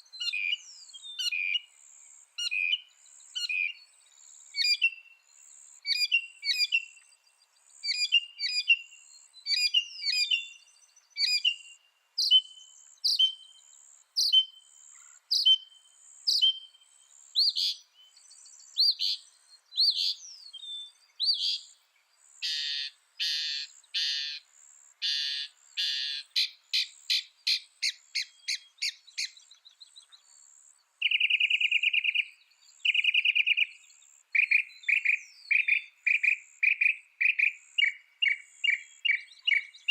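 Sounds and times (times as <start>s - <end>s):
mockingbird singing: 0.1s - 1.8s, 2.4s - 21.8s, 22.4s - 24.4s, 25.0s - 39.9s.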